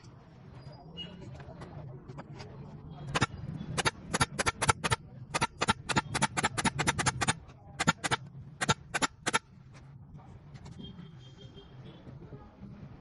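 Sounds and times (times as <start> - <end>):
rapid sharp clicks: 3.2 - 9.4.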